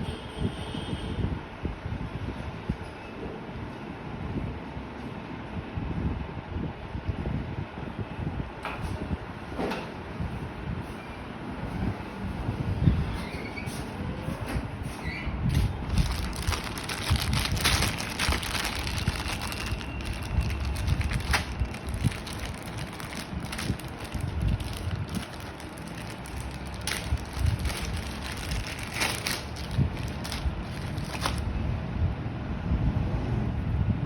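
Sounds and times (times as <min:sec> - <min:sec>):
packaging crinkling: 0:15.6 - 0:31.5
low rumble: 0:15.6 - 0:31.7.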